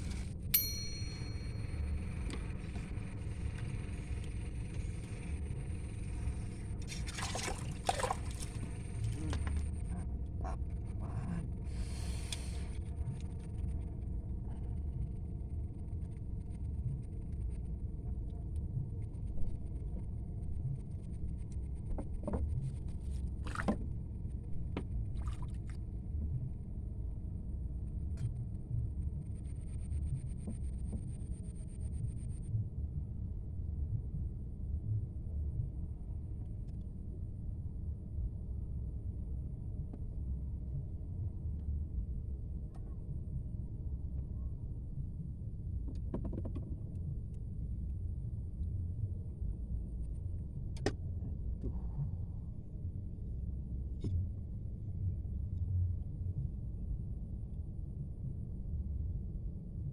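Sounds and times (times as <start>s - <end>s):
faint high whine: 0.0s - 6.9s
low rumble of wind: 0.0s - 59.9s
water rumbling: 6.9s - 9.6s.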